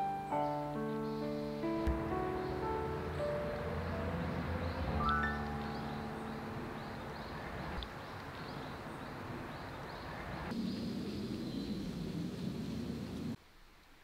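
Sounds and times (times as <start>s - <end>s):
guitar notes ringing: 0.0s - 7.3s
steady hiss: 10.1s - 14.0s.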